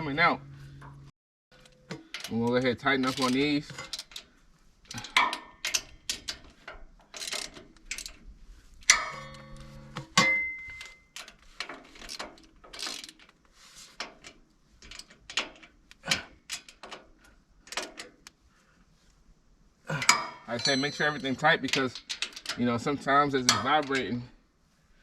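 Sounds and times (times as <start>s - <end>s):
ringing metal tone: 8.9s - 11.0s, 20.1s - 21.7s.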